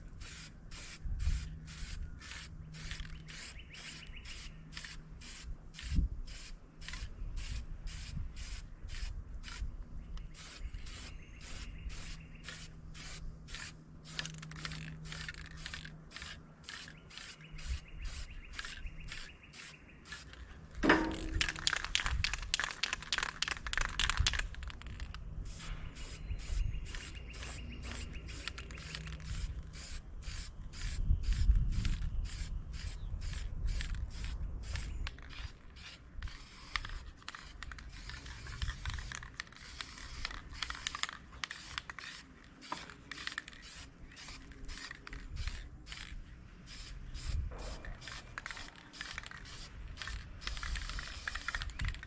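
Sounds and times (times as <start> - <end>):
wind rumble on microphone: 0.0 - 3.5, 5.3 - 13.6, 20.7 - 22.6, 23.4 - 27.3, 28.8 - 37.2, 47.1 - 48.5, 49.2 - 52.0.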